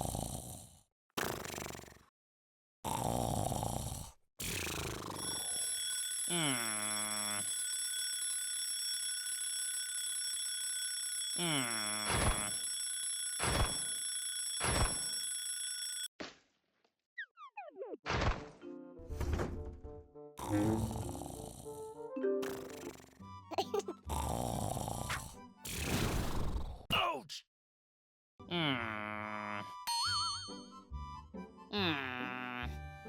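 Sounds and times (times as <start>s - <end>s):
alarm clock ringing: 5.2s - 16.1s
drowsy groan: 20.4s - 21.8s, 28.5s - 29.8s.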